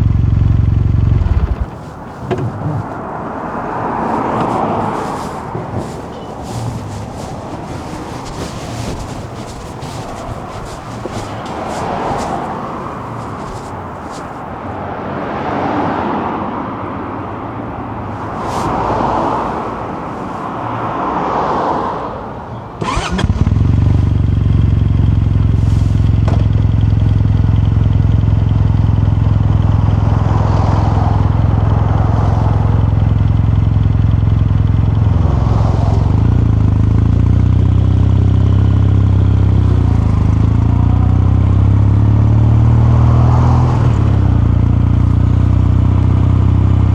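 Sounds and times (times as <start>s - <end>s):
motorcycle engine starting and idling: 0.0s - 14.5s, 22.8s - 42.3s
background road noise: 0.0s - 46.9s.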